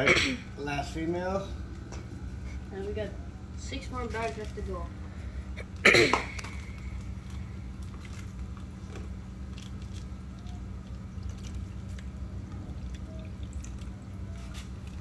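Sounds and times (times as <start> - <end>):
steady low hum: 0.0 - 15.0
water squishing in plastic bags: 5.7 - 15.0.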